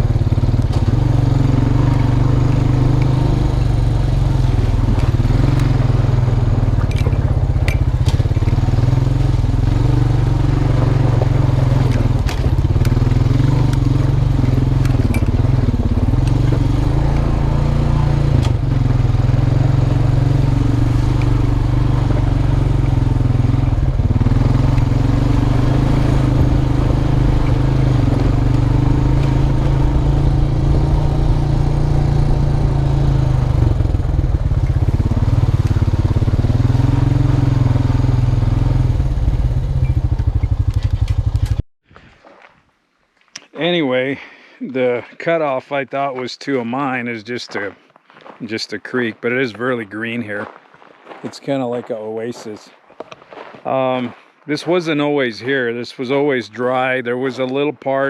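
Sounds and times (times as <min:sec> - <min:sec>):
quad bike engine running: 0:00.0 - 0:41.6.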